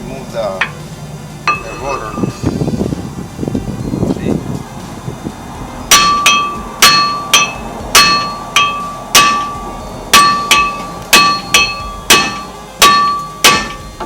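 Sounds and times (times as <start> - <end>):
metal rotor ringing: 0.4 - 3.0, 3.6 - 14.0
hammer striking metal rotor: 0.6 - 2.6, 5.8 - 14.0.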